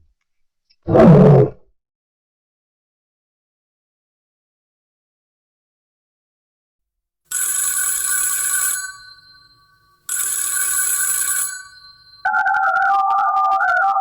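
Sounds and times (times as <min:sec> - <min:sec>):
telephone ringing: 0:07.3 - 0:14.0
electronic tone melody: 0:12.2 - 0:14.0.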